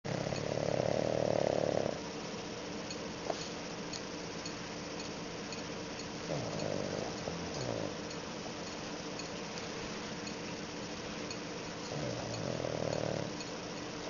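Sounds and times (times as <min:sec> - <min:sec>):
dog snoring: 0:00.1 - 0:02.1, 0:06.2 - 0:08.1, 0:11.8 - 0:13.5.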